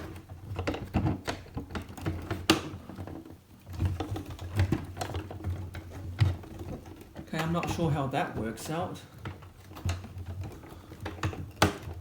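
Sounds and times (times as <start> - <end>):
hard plastic clicks and knocks: 9.2 - 12.0.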